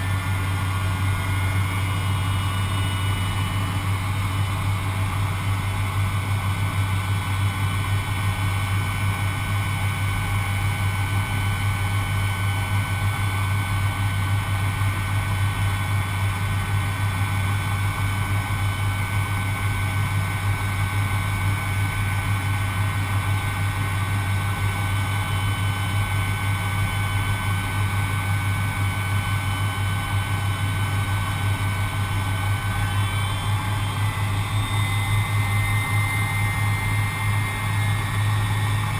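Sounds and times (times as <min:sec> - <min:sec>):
jet engine low hum: 0:00.0 - 0:38.9
jet engine whining tones: 0:29.1 - 0:38.9.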